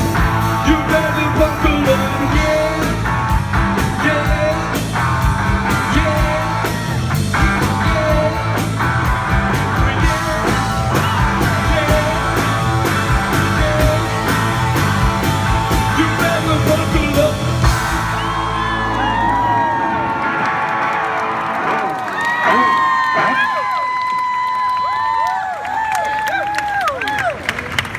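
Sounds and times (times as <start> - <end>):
drums beat: 0.0 - 19.4
live rock band playing: 0.0 - 22.0
audience cheering and whistling: 17.4 - 27.9.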